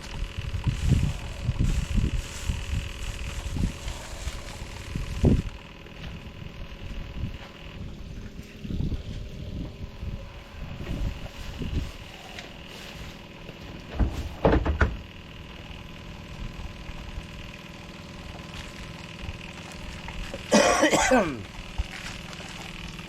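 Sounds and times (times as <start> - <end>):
faint hum: 0.0 - 23.0
man coughing: 20.4 - 21.5.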